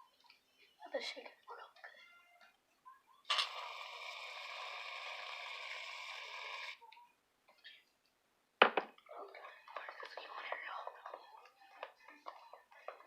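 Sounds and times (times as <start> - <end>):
aerosol can hissing: 3.3 - 6.8.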